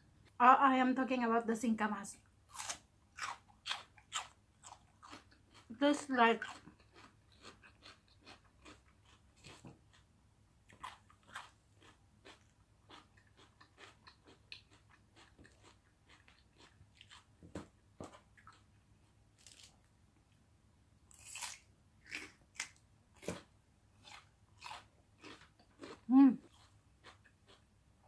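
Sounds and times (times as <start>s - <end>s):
person chewing crunchy food: 2.5s - 19.9s, 21.1s - 27.8s.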